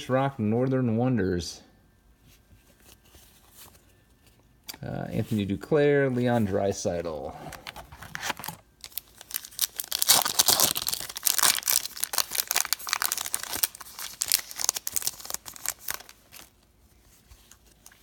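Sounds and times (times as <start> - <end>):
wrapper tearing and crinkling: 7.5 - 16.6.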